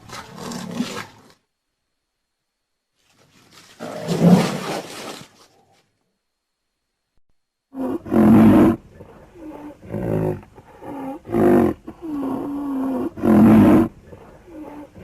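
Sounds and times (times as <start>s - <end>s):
rhinoceros calling: 7.7s - 15.0s.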